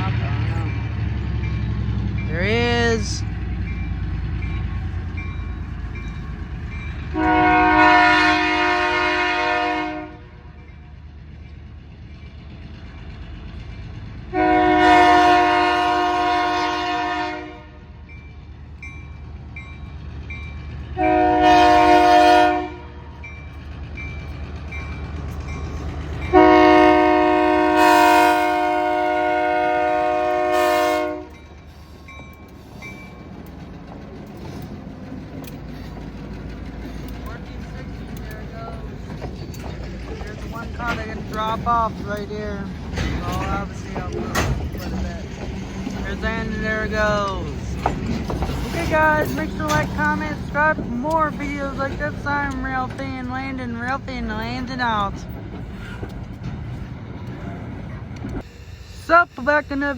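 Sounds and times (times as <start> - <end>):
crossing bell ringing: 0.0 - 8.8, 17.9 - 22.2, 23.1 - 27.6, 30.9 - 33.6, 48.8 - 55.3
locomotive horn blasts: 7.1 - 10.5, 14.3 - 17.9, 21.0 - 23.1, 26.3 - 31.4.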